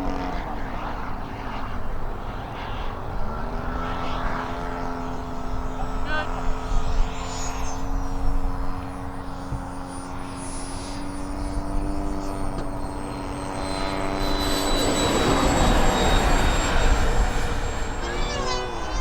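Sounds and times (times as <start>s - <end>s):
model aircraft engine drone: 0.0s - 19.0s
rushing air noise: 8.1s - 19.0s.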